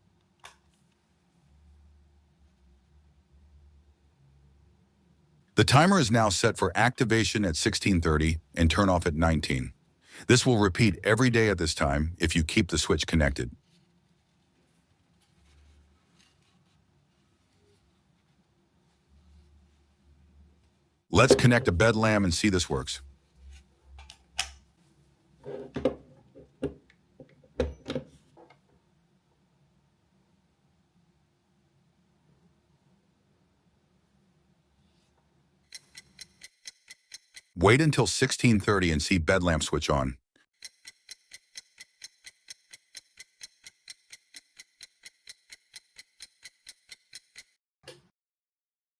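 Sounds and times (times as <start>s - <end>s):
fast clock ticking: 35.7s - 37.6s, 40.6s - 47.6s.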